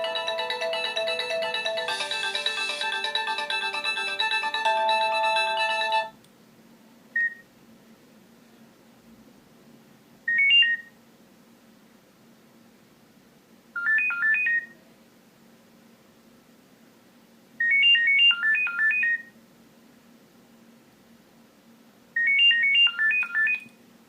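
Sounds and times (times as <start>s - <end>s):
mobile phone ringtone beeping: 0.0s - 6.1s.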